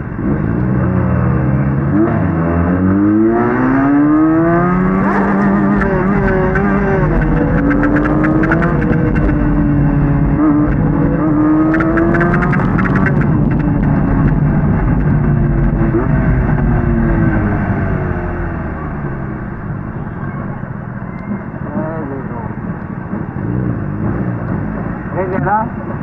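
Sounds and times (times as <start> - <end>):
motorcycle engine accelerating: 0.0 - 20.0.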